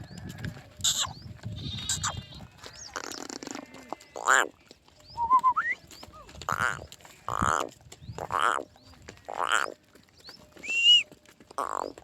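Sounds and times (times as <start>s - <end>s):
rippling animal calls: 0.8s - 4.6s, 5.2s - 9.8s, 10.6s - 12.0s
bird-like chirps: 0.8s - 12.0s.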